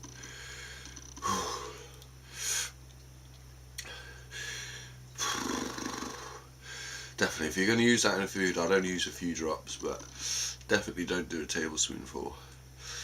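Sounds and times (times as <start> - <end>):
man breathing hard: 0.2 - 2.8, 3.8 - 5.5, 6.2 - 7.2, 10.1 - 10.6, 12.5 - 13.0.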